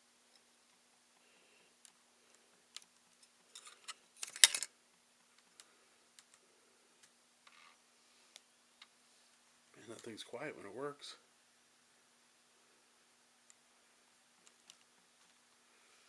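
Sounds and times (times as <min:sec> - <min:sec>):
faint steady hum: 0:00.0 - 0:16.0
laptop clicks and rattles: 0:03.6 - 0:04.7.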